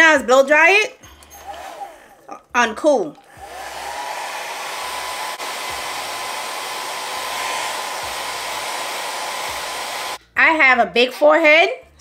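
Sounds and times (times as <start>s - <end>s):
hair dryer running: 1.4s - 1.9s, 3.3s - 10.2s.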